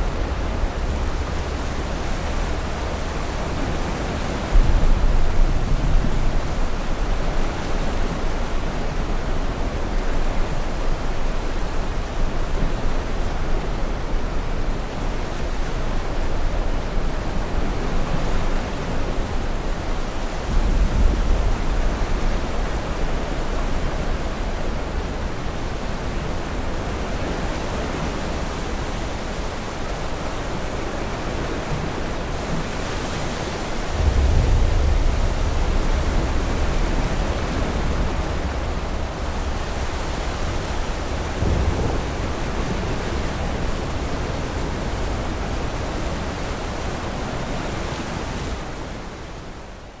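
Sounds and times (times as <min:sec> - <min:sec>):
steady rushing storm noise: 0:00.0 - 0:50.0
distant thunder rumbling: 0:33.8 - 0:46.4.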